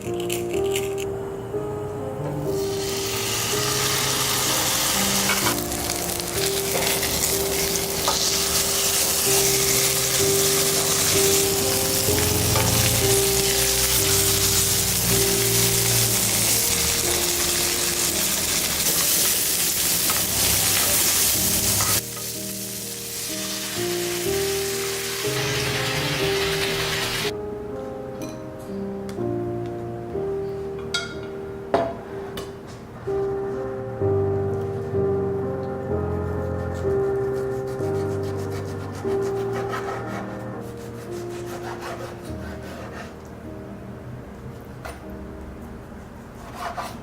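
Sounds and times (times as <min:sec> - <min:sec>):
food sizzling in a hot pan: 0:02.6 - 0:27.3.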